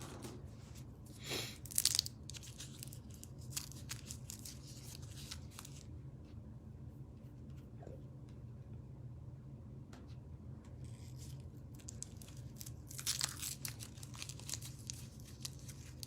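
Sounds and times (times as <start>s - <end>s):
packaging ripping: 1.6s - 5.8s, 11.0s - 16.0s
wrapper crinkling and rustling: 1.6s - 5.9s, 10.9s - 16.0s.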